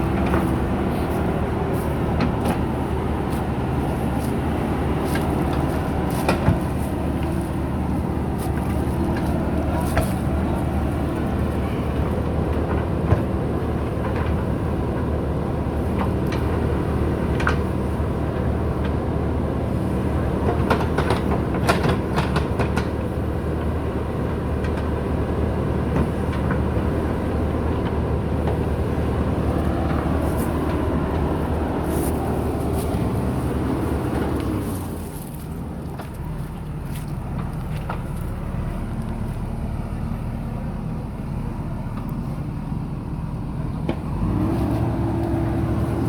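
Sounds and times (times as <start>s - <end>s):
diesel engine running: 0.0s - 46.0s.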